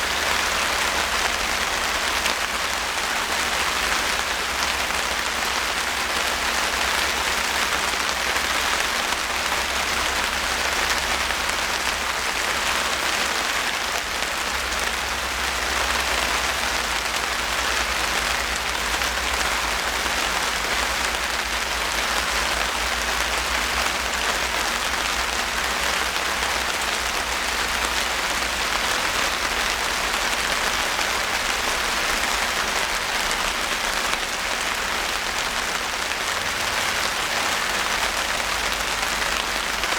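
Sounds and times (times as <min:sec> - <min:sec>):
rain pattering on surfaces: 0:00.0 - 0:39.9.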